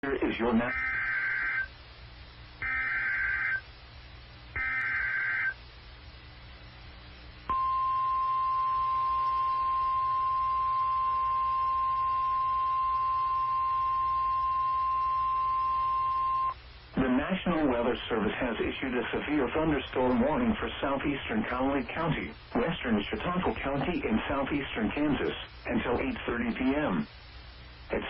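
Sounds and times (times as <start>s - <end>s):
steady alarm tone: 0.7s - 1.7s, 2.6s - 3.7s, 4.6s - 5.6s, 7.5s - 16.6s.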